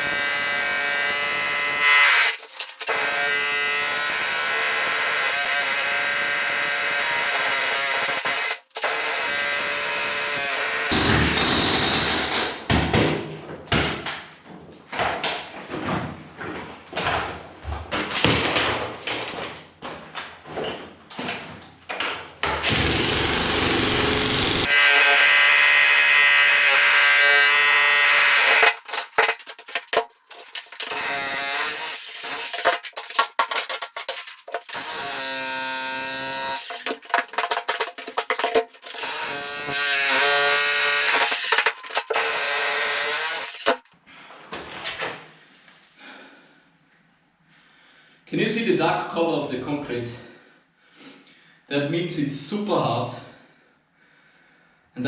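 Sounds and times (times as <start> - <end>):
power tool motor running: 0.0 - 11.0, 22.7 - 44.0.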